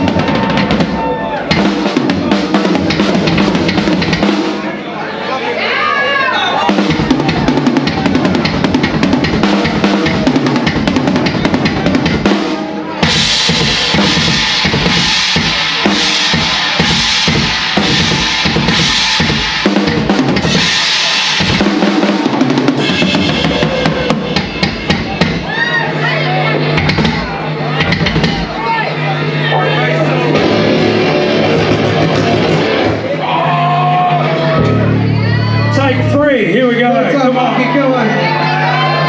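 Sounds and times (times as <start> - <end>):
cymbals crashing: 6.6 - 25.5, 30.0 - 33.3
bass drum strokes: 6.7 - 25.6, 30.2 - 33.3.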